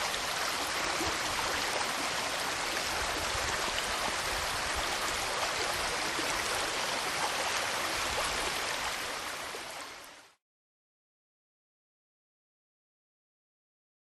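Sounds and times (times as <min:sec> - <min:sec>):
river water flowing: 0:00.0 - 0:10.4.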